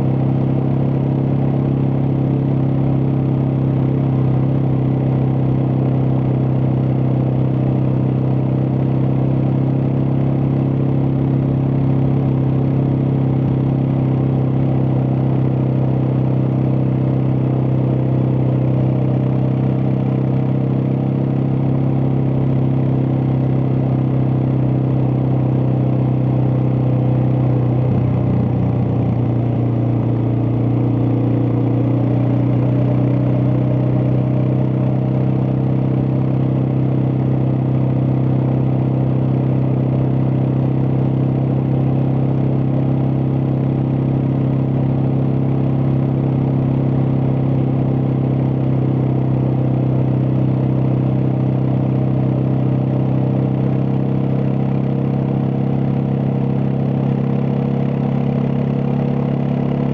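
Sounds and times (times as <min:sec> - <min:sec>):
motorcycle engine running steadily: 0:00.0 - 0:59.9.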